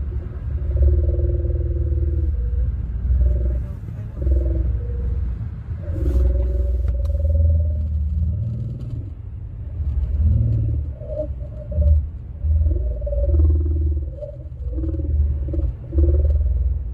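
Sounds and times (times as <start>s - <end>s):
car driving rumble: 0.0s - 16.9s
wavering radio tones: 10.5s - 16.9s.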